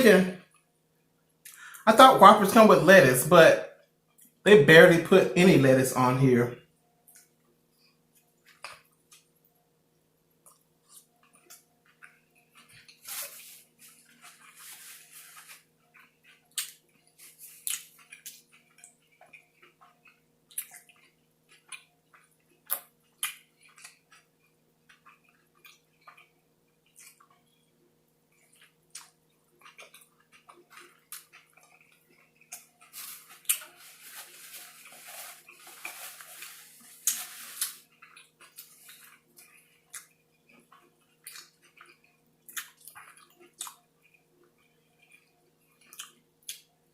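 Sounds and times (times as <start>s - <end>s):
faint steady hum: 0.0s - 46.9s
chewing and lip-smacking: 10.4s - 13.0s, 15.5s - 27.7s, 28.3s - 33.7s, 37.0s - 46.7s
rustling: 12.6s - 15.7s, 32.8s - 39.2s.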